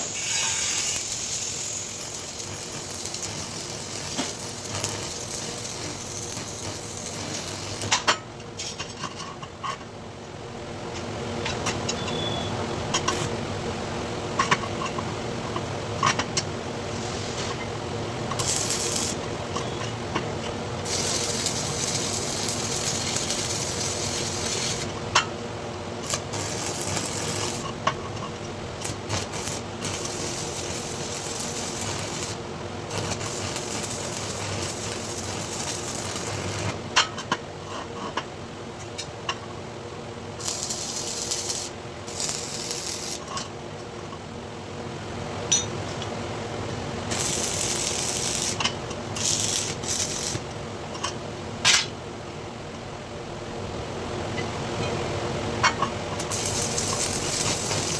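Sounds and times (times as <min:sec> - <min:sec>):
arc welding crackling hiss: 0:00.0 - 0:08.1, 0:16.8 - 0:19.8, 0:20.8 - 0:25.2, 0:25.9 - 0:37.0, 0:40.3 - 0:43.5, 0:46.9 - 0:50.5, 0:56.1 - 0:57.9.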